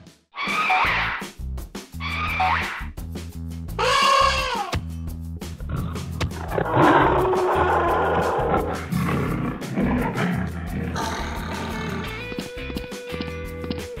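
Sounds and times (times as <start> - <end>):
background music: 0.0 - 14.0
loud animal roar: 5.8 - 12.3.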